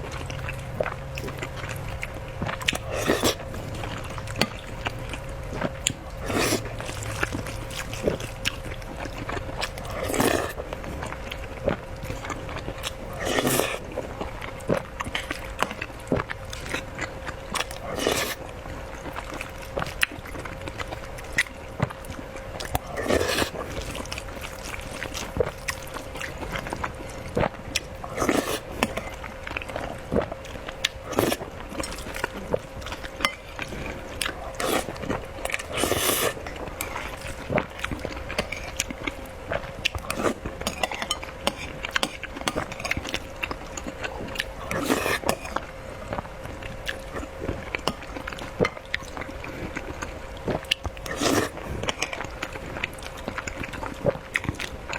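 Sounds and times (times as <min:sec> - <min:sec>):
noisy slurping: 0:00.0 - 0:46.2, 0:46.8 - 0:54.7
chewing and lip smacking: 0:00.0 - 0:54.9
faint steady hum: 0:00.0 - 0:54.9.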